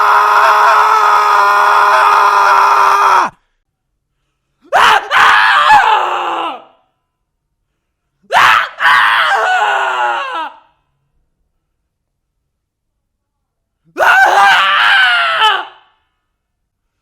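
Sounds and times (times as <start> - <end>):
man screaming: 0.0 - 3.4, 4.8 - 6.7, 14.0 - 15.9.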